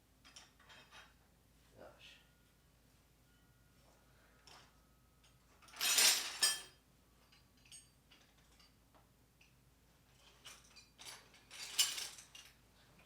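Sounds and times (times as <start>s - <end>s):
metal hand tools clattering: 4.5s - 8.7s.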